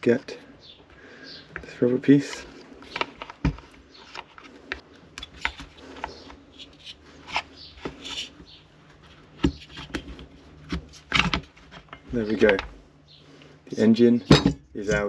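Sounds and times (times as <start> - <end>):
plastic and metal clicks and knocks: 9.3 - 12.8.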